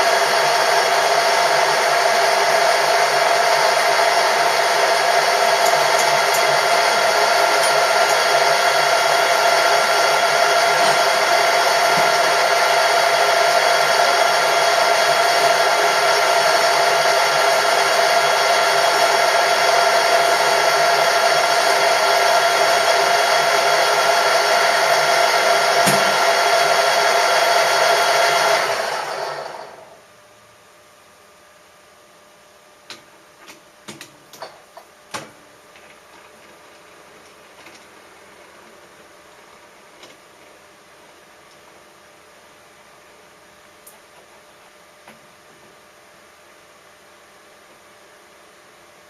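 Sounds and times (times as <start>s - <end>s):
machine tool whining: 0.0s - 30.0s.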